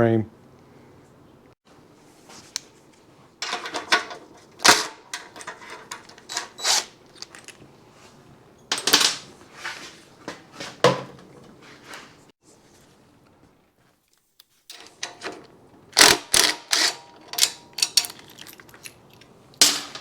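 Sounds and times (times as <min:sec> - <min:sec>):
metal tools clanking: 0:03.4 - 0:07.6, 0:08.6 - 0:09.3, 0:14.7 - 0:20.0.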